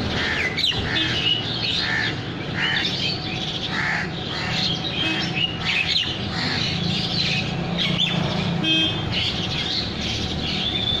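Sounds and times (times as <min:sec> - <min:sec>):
birds chirping and twittering: 0:00.0 - 0:11.0
city traffic hum: 0:00.0 - 0:11.0.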